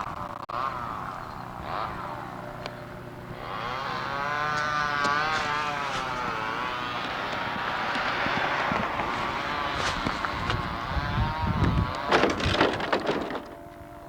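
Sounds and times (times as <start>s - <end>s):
vehicle engine revving: 0.0s - 12.8s.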